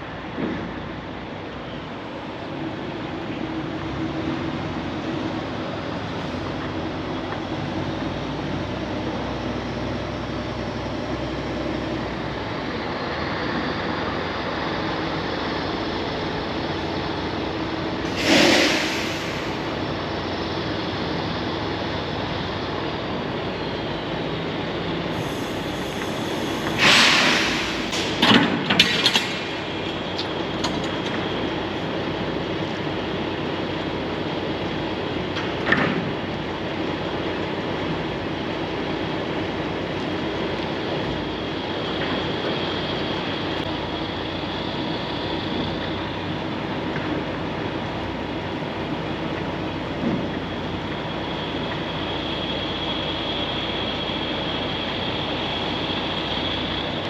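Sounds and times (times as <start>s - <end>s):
truck engine running: 0.0s - 57.0s
short loud bursts of noise: 26.8s - 28.2s.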